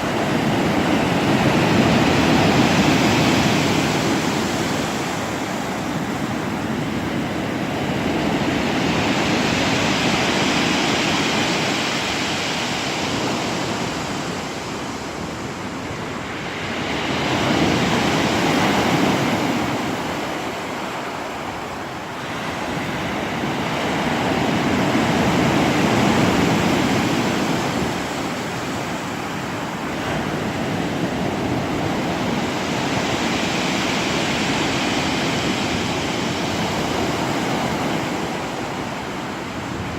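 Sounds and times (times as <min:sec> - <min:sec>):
sea waves breaking on shore: 0:00.0 - 0:39.9.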